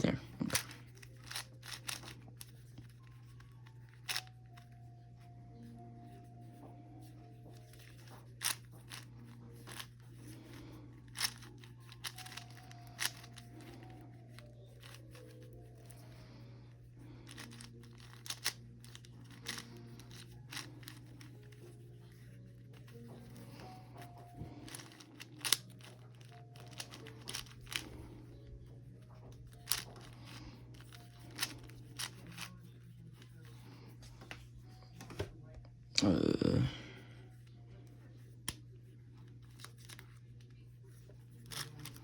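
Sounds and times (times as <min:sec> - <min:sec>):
puzzle cube clicking: 0:00.5 - 0:04.7, 0:07.6 - 0:16.0, 0:17.2 - 0:21.3, 0:24.6 - 0:28.0, 0:29.5 - 0:32.6, 0:41.4 - 0:42.0.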